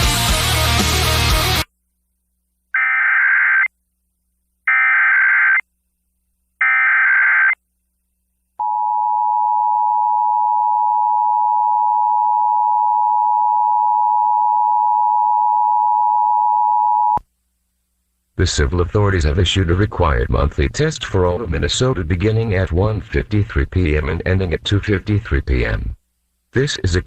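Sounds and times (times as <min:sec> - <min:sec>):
rock music on radio: 0:00.0 - 0:01.7.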